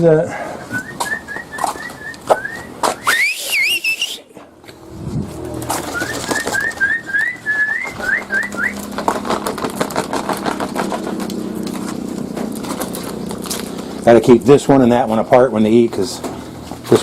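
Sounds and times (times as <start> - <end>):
high rising whine: 0.0 - 17.0
person whistling rising calls: 0.5 - 4.4, 5.8 - 8.9.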